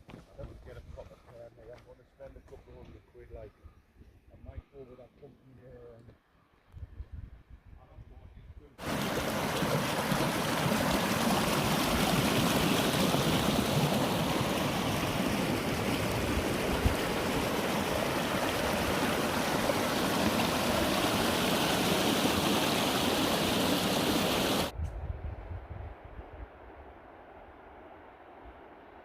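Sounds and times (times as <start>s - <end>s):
stream rushing over rocks: 8.8s - 24.7s.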